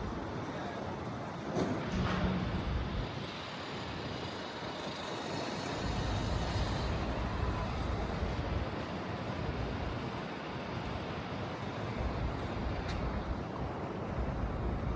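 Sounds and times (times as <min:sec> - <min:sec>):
car road and engine noise: 0:01.0 - 0:14.9.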